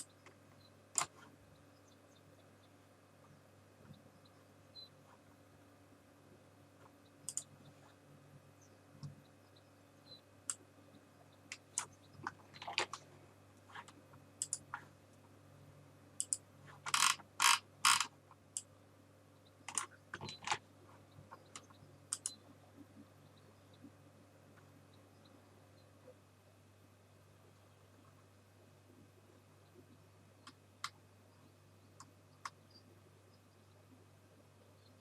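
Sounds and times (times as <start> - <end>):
mouse clicks: 7.2 - 7.5, 13.8 - 14.8, 16.2 - 16.4, 21.5 - 22.4.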